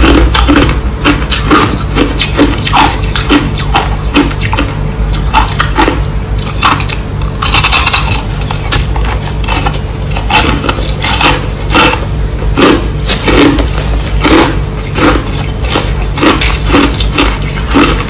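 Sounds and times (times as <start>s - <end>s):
ice being chewed: 0.0s - 18.0s
low hum: 0.0s - 18.0s.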